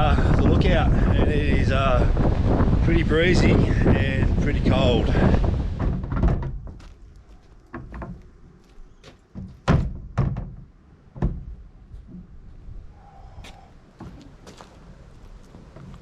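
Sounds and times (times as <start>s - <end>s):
wind buffeting microphone: 0.0s - 8.6s, 11.2s - 16.0s
knocks and thuds: 5.1s - 7.0s, 7.7s - 8.3s, 9.3s - 12.3s.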